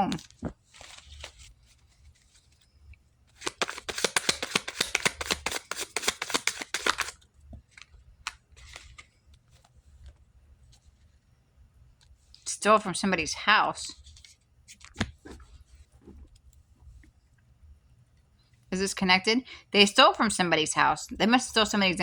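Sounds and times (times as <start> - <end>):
cards being shuffled: 0.0 - 2.7, 3.3 - 11.0, 13.9 - 16.4
card taps: 3.4 - 8.8, 14.8 - 15.4.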